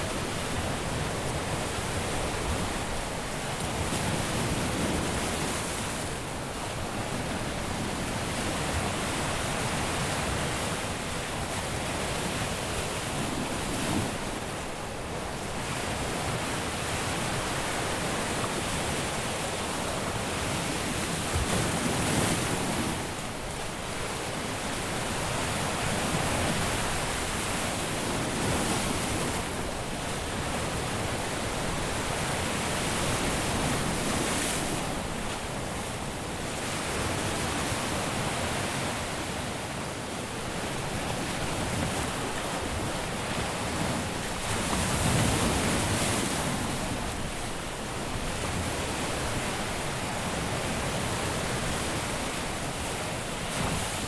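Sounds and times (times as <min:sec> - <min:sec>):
surf breaking on a beach: 0:00.0 - 0:54.0
wind on the microphone: 0:00.0 - 0:54.0.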